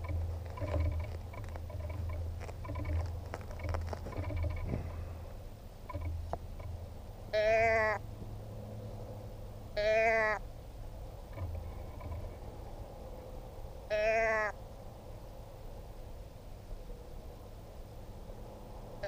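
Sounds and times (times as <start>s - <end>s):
deer call bleats: 7.3s - 8.0s, 9.8s - 10.4s, 13.9s - 14.6s.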